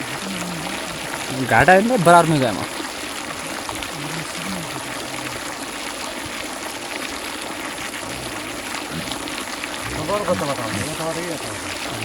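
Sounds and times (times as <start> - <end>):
running water hiss: 0.0 - 12.0.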